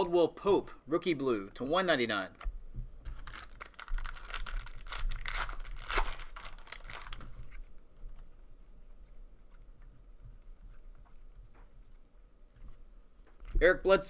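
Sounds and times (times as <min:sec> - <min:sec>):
foil wrapper tearing and crinkling: 0:03.1 - 0:07.6.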